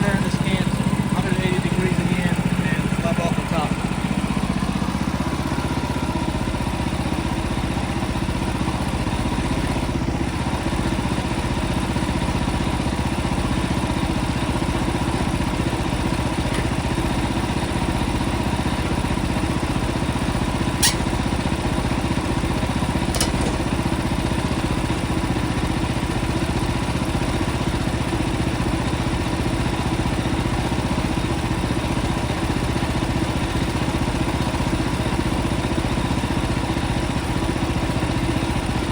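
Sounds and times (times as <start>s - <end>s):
sawmill engine running: 0.0s - 38.9s
sharp click: 20.8s - 21.2s, 23.2s - 23.7s.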